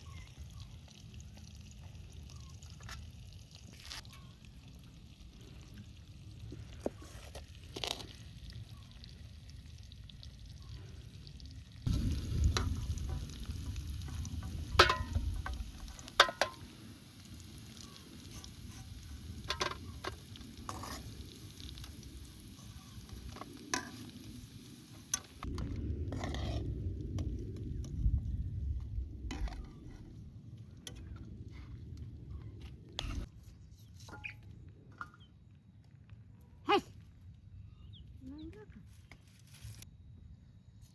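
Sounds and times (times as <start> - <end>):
food frying in a pan: 0.0 - 25.5.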